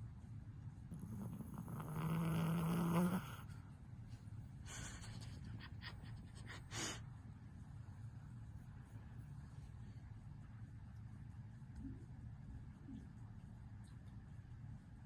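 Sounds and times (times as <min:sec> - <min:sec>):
child snoring: 0:00.9 - 0:03.4
snuffling breaths: 0:04.6 - 0:07.0.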